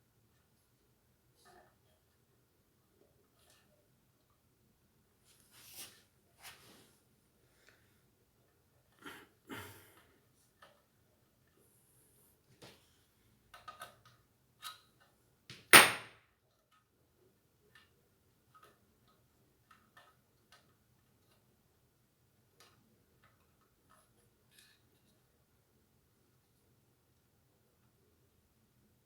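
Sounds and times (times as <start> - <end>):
loud sharp clack: 15.8 - 16.2.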